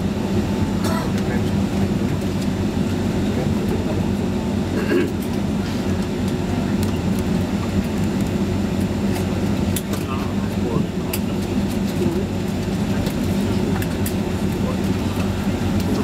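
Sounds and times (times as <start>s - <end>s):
airplane cabin hum and rumble: 0.0s - 16.0s.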